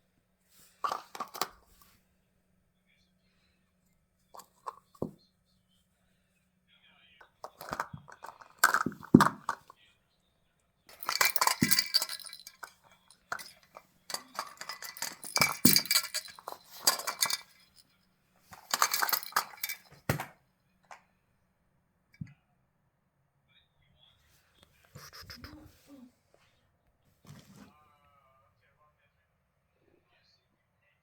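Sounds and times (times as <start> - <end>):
dish clinking: 7.4 - 9.7, 10.9 - 17.8, 18.5 - 20.3.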